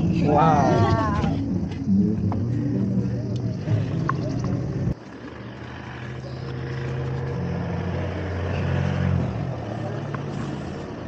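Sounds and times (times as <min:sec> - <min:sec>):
vehicle engine running: 0:00.0 - 0:11.0
person talking: 0:00.1 - 0:01.4.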